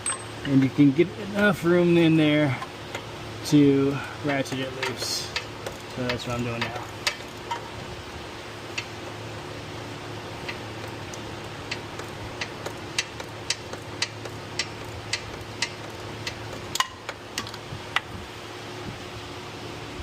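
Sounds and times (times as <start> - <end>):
ratchet clicking: 4.2 - 7.7, 8.7 - 9.0, 10.4 - 18.1.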